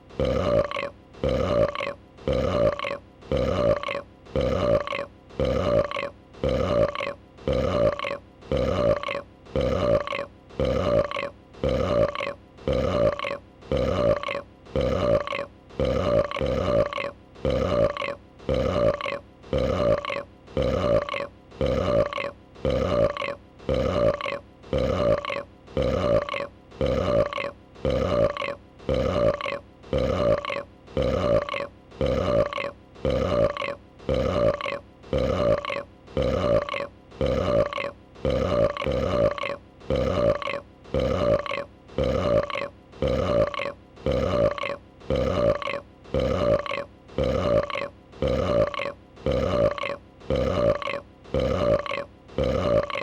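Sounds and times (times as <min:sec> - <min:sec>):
creature burping: 0:00.0 - 0:53.0.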